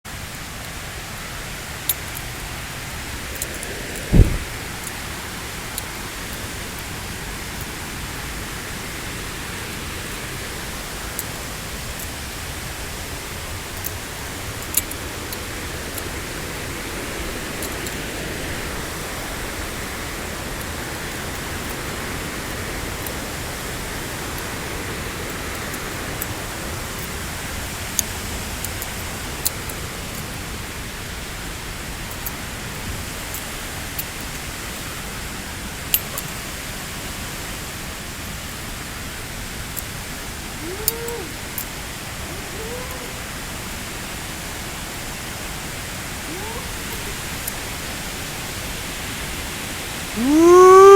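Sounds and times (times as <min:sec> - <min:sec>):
waterfall rushing: 0:34.3 - 0:50.9.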